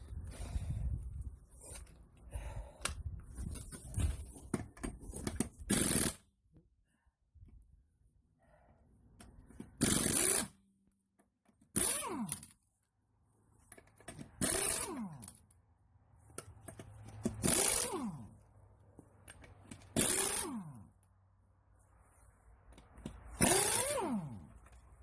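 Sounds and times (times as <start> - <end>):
impact wrench whirring: 5.7 - 6.2, 9.8 - 10.6, 11.7 - 12.5, 14.4 - 15.4, 17.2 - 18.4, 19.7 - 21.0, 23.0 - 24.6.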